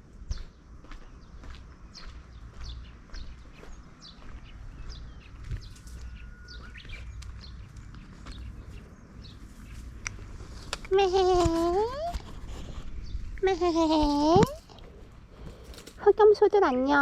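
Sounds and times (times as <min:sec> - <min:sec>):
small birds chirping: 0:00.0 - 0:17.0.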